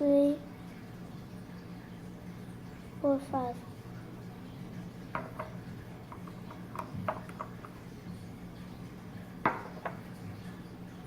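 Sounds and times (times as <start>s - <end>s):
faint steady hum: 0.0s - 11.0s
glass bottles clicking and tapping: 5.2s - 7.8s.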